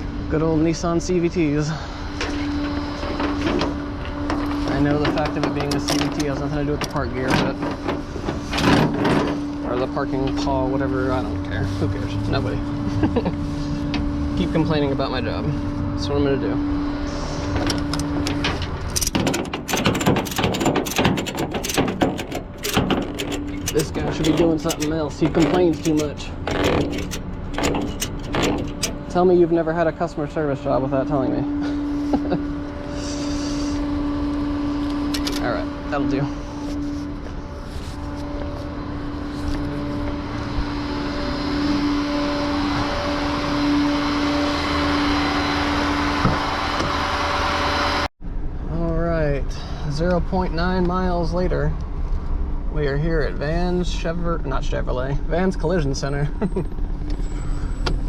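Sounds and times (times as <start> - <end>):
truck engine hum: 0.0 - 48.1
road and mechanical noise: 0.0 - 58.0
ratchet strap clicking: 17.6 - 29.1.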